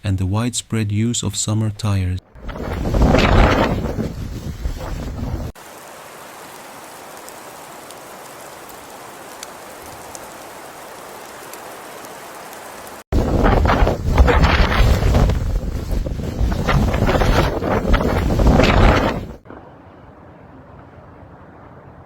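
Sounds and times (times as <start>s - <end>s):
wind buffeting microphone: 2.4s - 5.6s, 13.1s - 19.4s
rain hiss: 4.6s - 13.8s.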